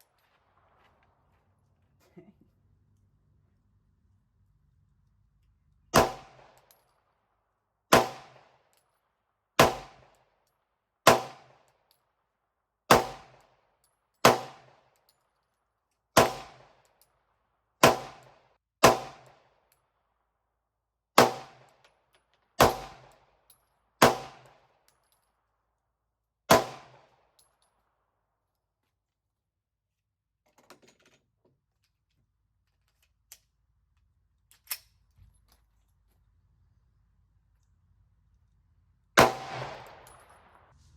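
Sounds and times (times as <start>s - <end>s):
pistol shots: 5.9s - 6.6s, 7.9s - 8.5s, 9.6s - 10.1s, 11.1s - 11.6s, 12.9s - 13.4s, 14.2s - 14.8s, 16.2s - 16.7s, 17.8s - 19.4s, 21.2s - 21.7s, 22.6s - 23.1s, 24.0s - 24.6s, 26.5s - 27.0s, 39.2s - 40.7s.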